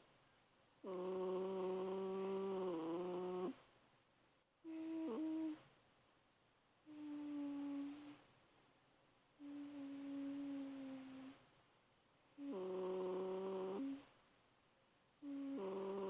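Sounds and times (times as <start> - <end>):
puppy humming in sleep: 0.8 - 3.6, 4.6 - 5.6, 6.9 - 8.2, 9.4 - 11.4, 12.4 - 14.1, 15.2 - 16.0.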